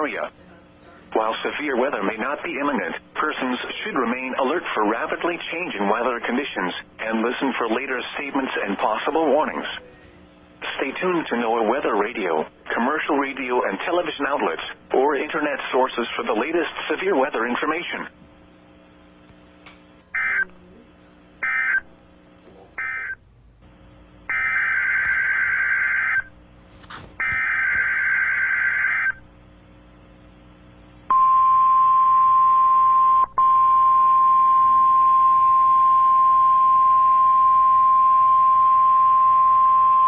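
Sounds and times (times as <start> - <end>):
high weather radio alert tone: 20.1 - 20.8, 21.4 - 21.9, 22.8 - 23.2, 24.3 - 26.3.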